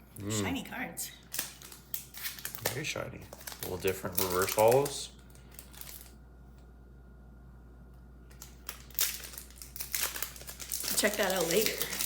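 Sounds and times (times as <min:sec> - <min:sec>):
low room hum: 0:00.0 - 0:12.0
trading cards clicking and rustling: 0:01.3 - 0:06.1.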